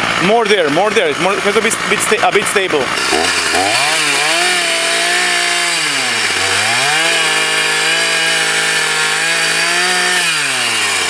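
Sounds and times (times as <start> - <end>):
chainsaw revving: 0.0 - 11.0.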